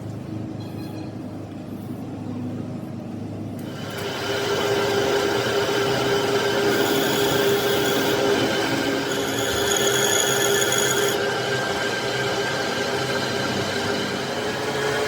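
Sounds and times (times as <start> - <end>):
high cutting whine: 3.6 - 15.0
machine tool humming: 3.6 - 15.0.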